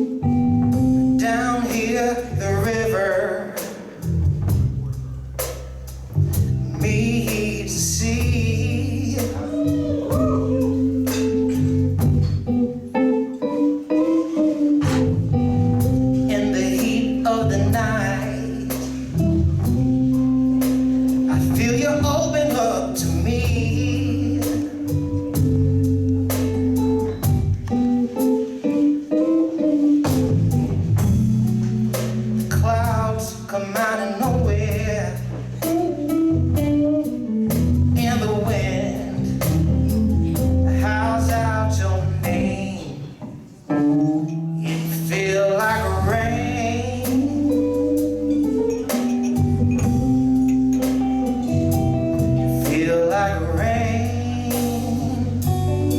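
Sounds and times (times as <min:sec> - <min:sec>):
live blues band playing: 0:00.0 - 0:55.9
man singing: 0:01.0 - 0:04.2, 0:06.5 - 0:11.7, 0:16.1 - 0:26.0, 0:32.3 - 0:35.7, 0:37.8 - 0:43.3, 0:44.0 - 0:49.1, 0:51.4 - 0:55.9.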